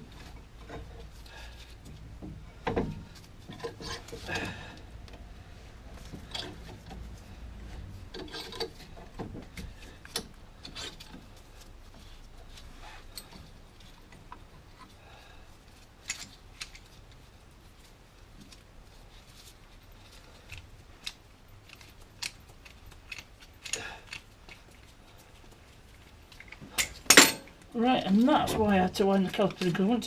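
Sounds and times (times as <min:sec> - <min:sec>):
tools clicking and knocking: 0:08.1 - 0:11.4, 0:20.1 - 0:25.6, 0:26.3 - 0:27.7.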